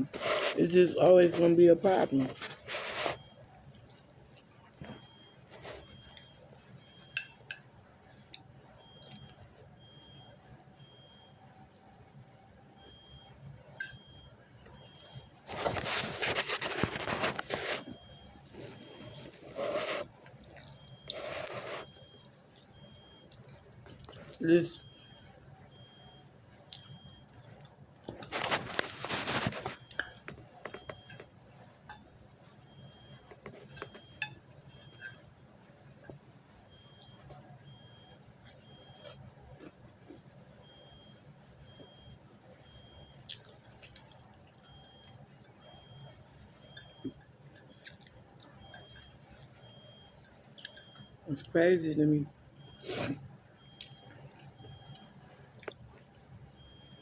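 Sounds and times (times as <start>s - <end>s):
clatter and rustling: 15.5s - 20.1s, 28.1s - 31.3s
wet mouth sounds eating: 47.8s - 48.2s
small clicks and clinks: 50.2s - 51.1s.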